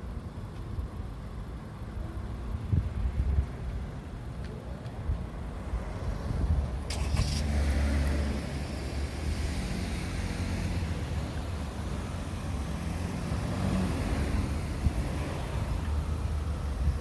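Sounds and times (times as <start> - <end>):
cars driving past: 5.6 - 17.0.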